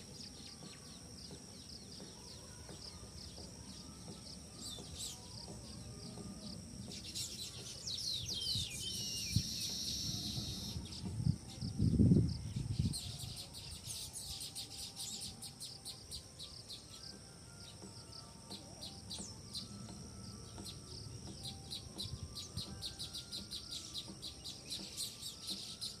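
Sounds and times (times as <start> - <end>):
small birds chirping: 0.0 - 26.0
steady high hum: 0.0 - 26.0
whistled bird notes: 6.9 - 26.0.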